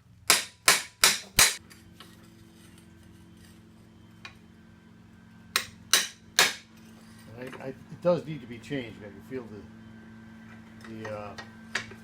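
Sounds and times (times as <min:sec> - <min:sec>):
low steady hum: 0:00.0 - 0:12.0
hammer striking metal: 0:00.3 - 0:01.6, 0:05.5 - 0:06.7.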